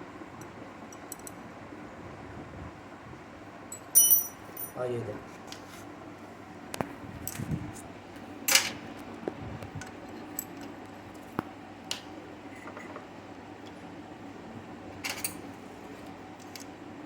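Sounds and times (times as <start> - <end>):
metallic clinks and taps: 3.7 - 4.8.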